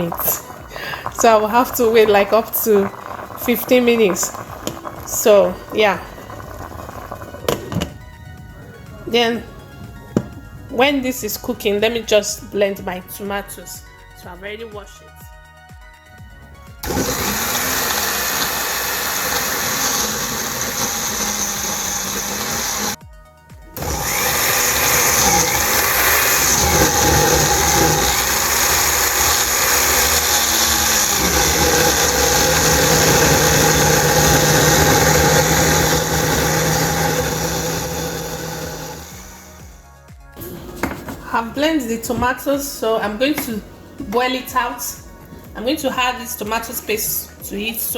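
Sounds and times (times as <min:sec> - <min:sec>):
electric blender whirring: 0:00.0 - 0:08.7, 0:16.8 - 0:23.0, 0:23.8 - 0:41.2.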